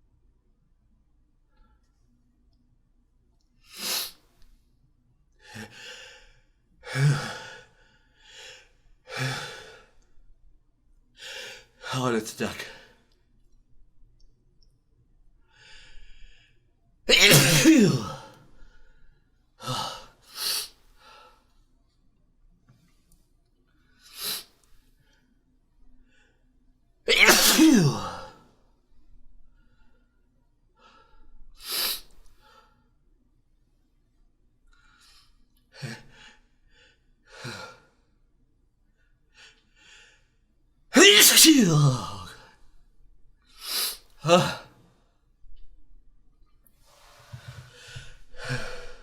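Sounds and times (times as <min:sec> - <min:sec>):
person sneezing: 0:17.1 - 0:18.3, 0:27.1 - 0:28.3, 0:41.0 - 0:42.3, 0:44.2 - 0:44.6
short breathy bursts: 0:41.0 - 0:42.2.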